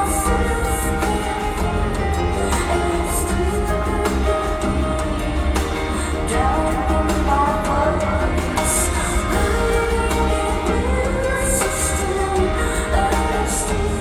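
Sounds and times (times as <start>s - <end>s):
live band music with bass: 0.0s - 14.0s
woman singing: 0.0s - 14.0s.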